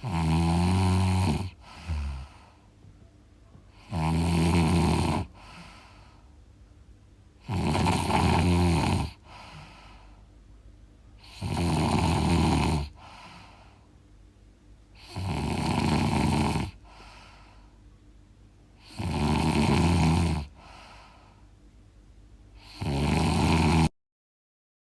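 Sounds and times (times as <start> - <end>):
person snoring loudly: 0.0 - 2.6, 3.8 - 6.1, 7.4 - 10.0, 11.2 - 13.8, 14.9 - 17.6, 18.8 - 21.4, 22.6 - 23.9
soft breath: 1.5 - 3.9, 5.3 - 6.5, 9.2 - 10.4, 12.9 - 14.0, 16.7 - 18.0, 20.5 - 21.6.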